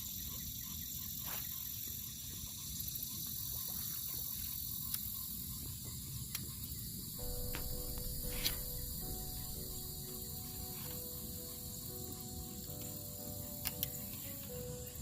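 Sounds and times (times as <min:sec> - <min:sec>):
insects chorus: 0:00.0 - 0:15.0
sharp click: 0:07.2 - 0:10.0
wind rumble on microphone: 0:07.2 - 0:10.9.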